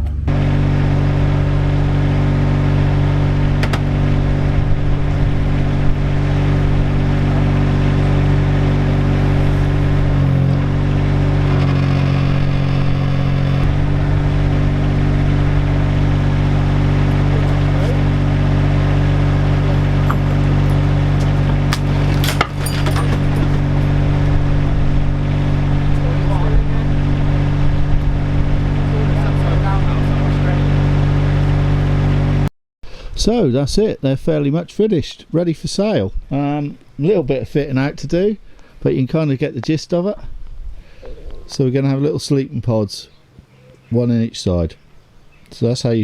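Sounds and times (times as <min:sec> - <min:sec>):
engine running: 0:00.0 - 0:32.5.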